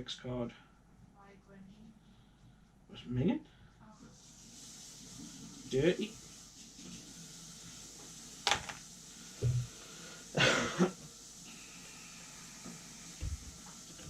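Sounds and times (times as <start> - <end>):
soft low thump: 9.4 - 9.7, 13.2 - 13.6
person coughing or laughing: 10.4 - 11.0.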